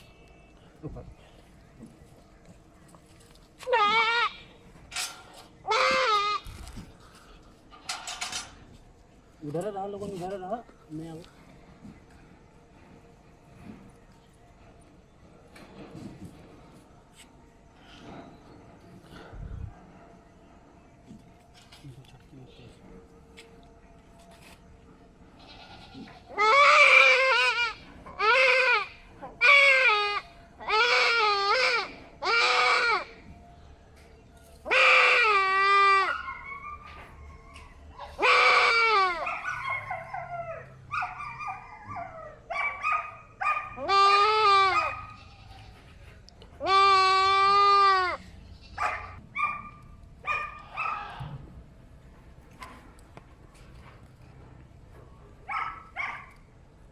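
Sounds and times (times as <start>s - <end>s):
goat bleating in distress: 3.6s - 4.6s, 5.6s - 6.6s, 25.4s - 33.2s, 34.7s - 36.1s, 38.2s - 39.3s, 43.8s - 45.8s, 46.6s - 48.8s.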